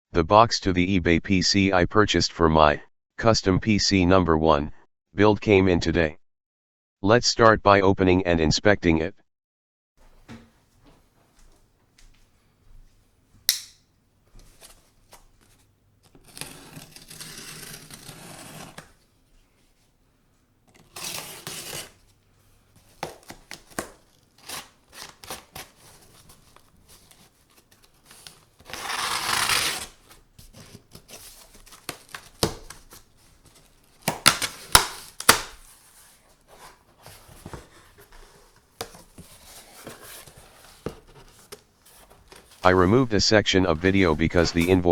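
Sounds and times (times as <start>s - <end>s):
cardboard rustling: 14.3s - 20.0s, 20.7s - 42.8s, 43.7s - 44.9s
packing tape tearing: 16.1s - 19.0s, 20.7s - 22.1s, 22.9s - 35.8s.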